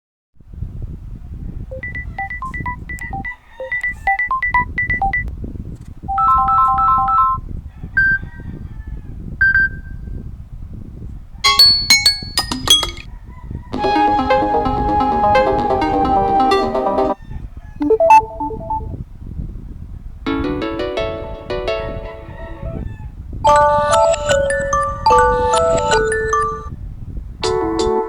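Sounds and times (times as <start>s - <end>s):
phone ringtone melodies: 1.7s - 5.2s, 6.1s - 7.4s, 11.5s - 13.0s, 13.8s - 17.2s, 17.8s - 19.0s, 23.5s - 26.7s.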